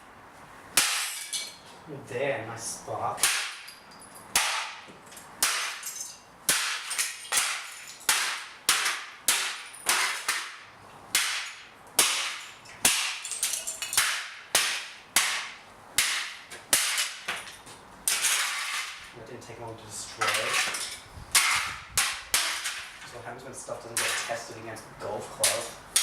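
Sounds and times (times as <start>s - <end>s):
golf club smashing metal heater: 0.8s - 1.6s, 3.2s - 19.1s, 20.2s - 23.1s.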